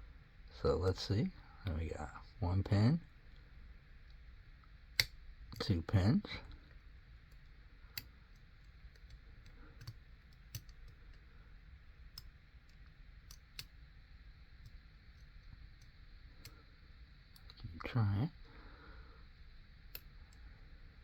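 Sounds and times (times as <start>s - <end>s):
lock pick clicks: 7.3s - 11.2s, 12.1s - 13.8s.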